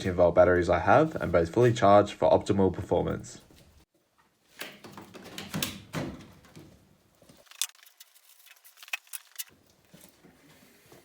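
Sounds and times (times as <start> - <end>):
rustling: 3.4 - 11.0.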